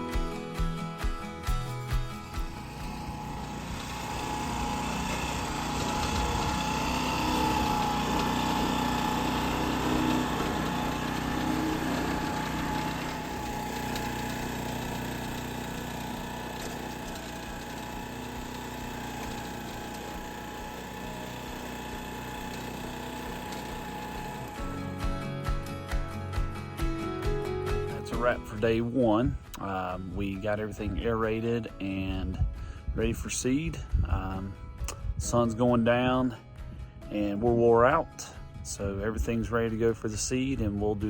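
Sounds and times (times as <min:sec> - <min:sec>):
gas engine running under load: 0:00.0 - 0:25.6.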